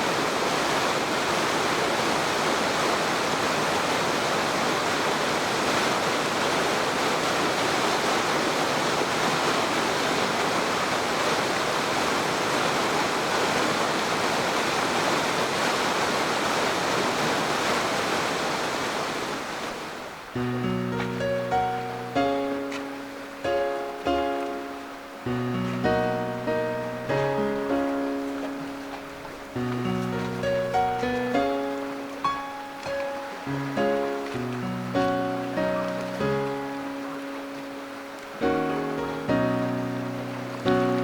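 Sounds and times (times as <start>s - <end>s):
stream rushing over rapids: 0.0s - 41.0s.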